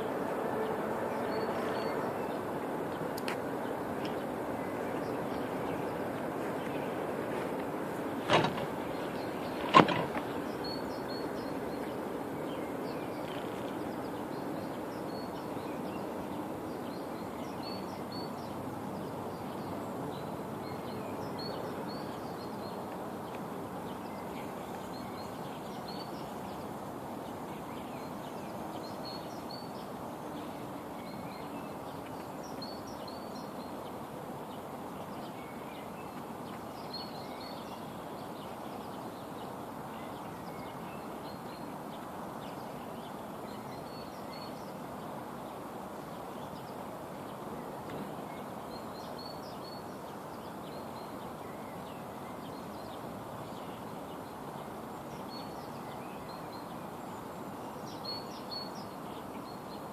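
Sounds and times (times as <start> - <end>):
outdoor ambience: 0.0 - 59.9
small birds chirping: 0.0 - 59.9.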